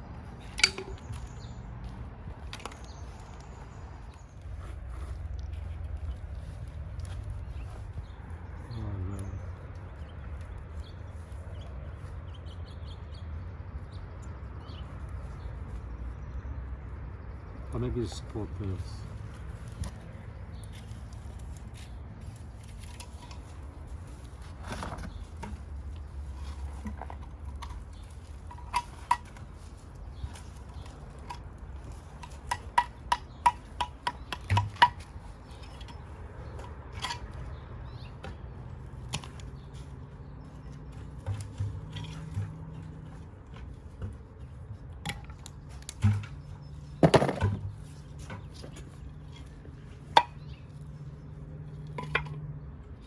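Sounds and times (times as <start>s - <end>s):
clicks and knocks of hard objects: 0.4s - 1.6s, 2.4s - 5.7s, 19.3s - 51.0s, 51.7s - 52.6s.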